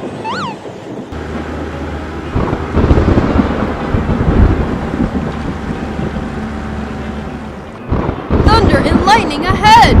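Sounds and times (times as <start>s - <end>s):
thunder rumbling: 2.2s - 6.3s, 7.9s - 10.0s.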